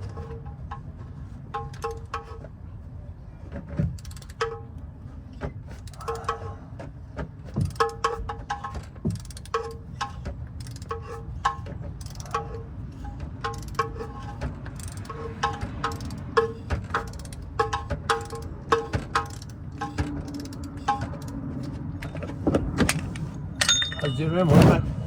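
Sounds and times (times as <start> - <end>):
low steady rumble: 11.3 - 25.0.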